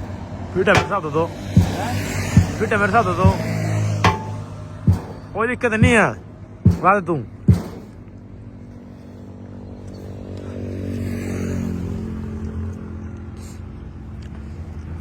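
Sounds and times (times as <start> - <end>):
engine running: 0.0 - 9.6.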